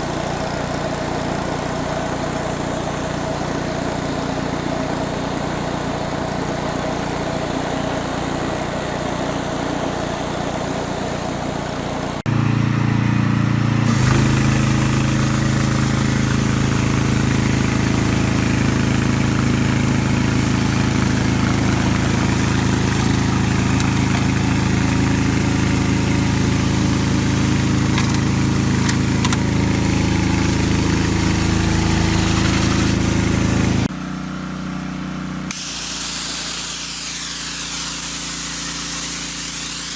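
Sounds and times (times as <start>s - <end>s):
pressure washer engine running: 0.0s - 39.9s
hiss: 13.9s - 29.0s, 29.7s - 33.9s, 35.5s - 39.9s.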